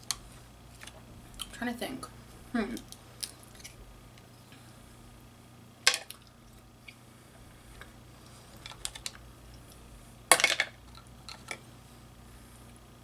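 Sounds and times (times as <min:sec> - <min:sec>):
seafood shells clicking and cracking: 0:02.8 - 0:04.3, 0:05.8 - 0:06.4, 0:08.5 - 0:11.6.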